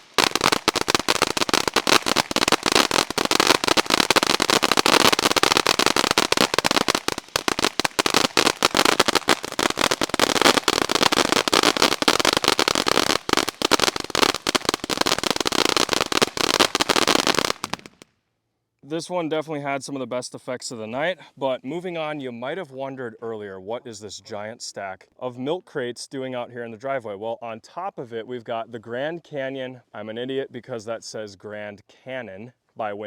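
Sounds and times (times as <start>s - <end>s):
firework fountain hissing and crackling: 0.0s - 18.0s.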